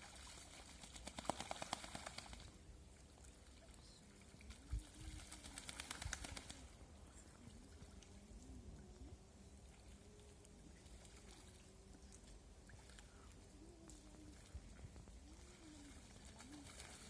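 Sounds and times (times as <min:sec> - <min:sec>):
birds' wings flapping: 0:00.2 - 0:02.6, 0:04.5 - 0:06.8, 0:15.4 - 0:17.0.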